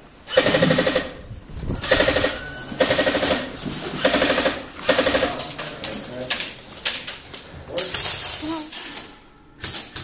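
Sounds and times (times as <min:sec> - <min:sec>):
airsoft guns automatic bursts: 0:00.3 - 0:01.2, 0:01.8 - 0:05.4.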